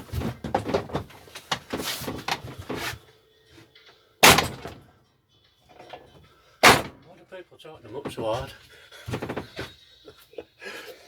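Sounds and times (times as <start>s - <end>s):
hand tools clattering on metal: 4.2s - 4.8s, 8.0s - 9.8s
loud sharp knock: 4.2s - 4.8s, 6.6s - 7.0s.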